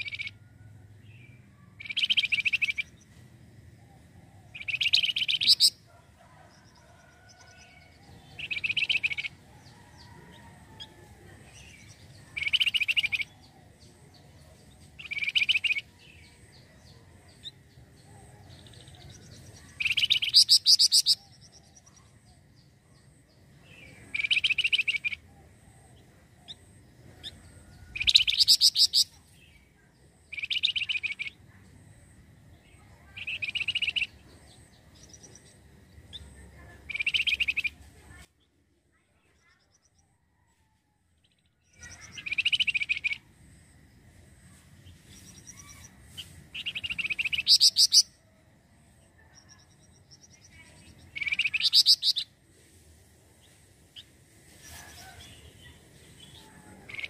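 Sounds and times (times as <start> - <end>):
bird chattering trills: 0.0 - 0.4, 1.7 - 3.0, 4.4 - 5.8, 8.3 - 9.4, 11.8 - 13.5, 15.0 - 15.9, 19.6 - 21.5, 26.0 - 29.2, 32.9 - 37.8, 41.7 - 43.3, 45.2 - 48.1, 49.8 - 52.3, 56.4 - 57.0.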